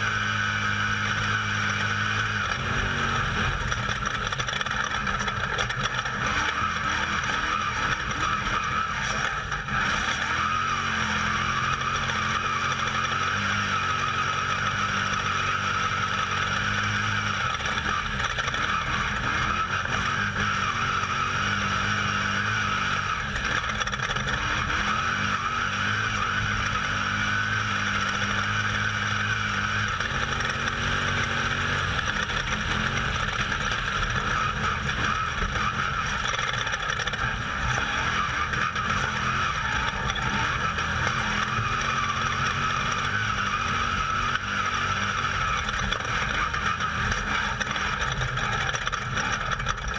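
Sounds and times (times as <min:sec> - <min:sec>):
off-road vehicle engine running hard: 0:00.0 - 0:49.9
tyres on dirt: 0:00.0 - 0:49.9.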